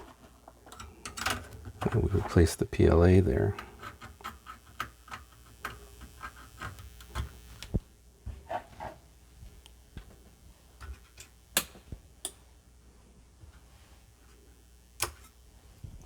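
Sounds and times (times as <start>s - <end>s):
small parts clicking and tapping: 0.0s - 2.4s, 3.4s - 7.8s.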